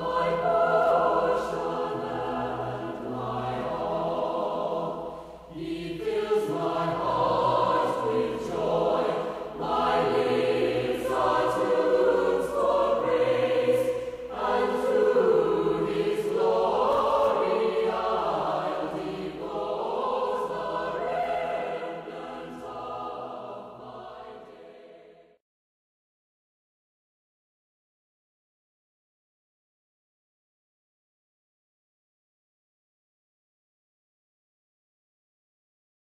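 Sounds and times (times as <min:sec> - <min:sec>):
choir singing: 0:00.0 - 0:25.4.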